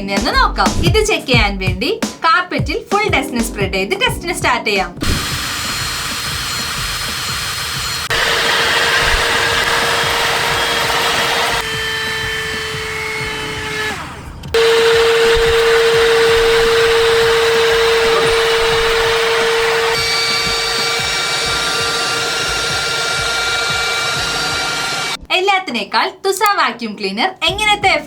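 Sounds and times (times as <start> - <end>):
handheld vacuum cleaner whining: 5.0 - 25.2.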